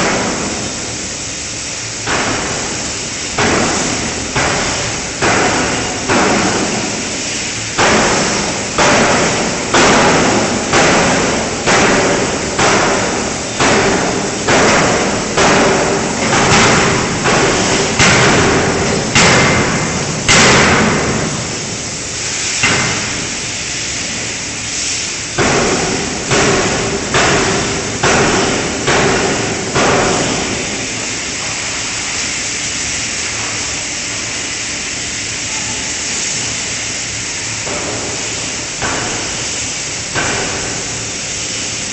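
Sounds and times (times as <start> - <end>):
steady hum: 0.0 - 41.9
steady machine noise: 0.0 - 41.9
forging hammer heavy blows: 3.4 - 21.6, 25.4 - 30.9.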